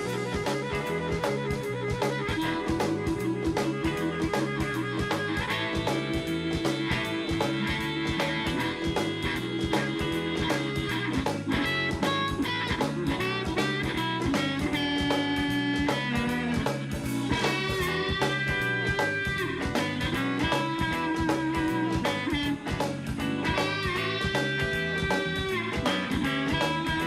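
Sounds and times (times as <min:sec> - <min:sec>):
blues band playing: 0:00.0 - 0:27.0
drums beat: 0:00.0 - 0:27.0
held lead guitar notes: 0:00.0 - 0:27.0.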